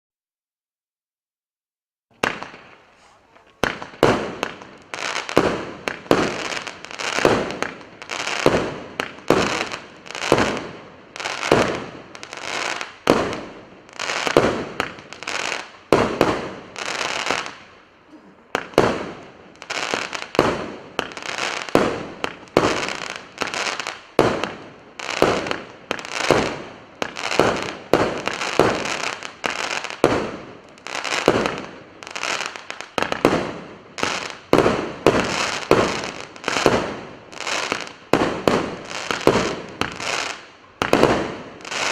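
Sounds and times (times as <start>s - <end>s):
firework shots firing: 2.2s - 13.6s, 14.2s - 17.6s, 18.5s - 41.9s
crackle of sparks: 18.6s - 41.9s.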